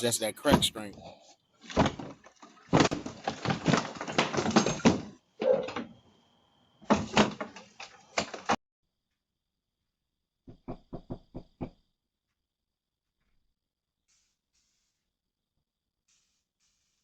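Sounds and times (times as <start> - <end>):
door banging and rattling: 2.8 - 5.8.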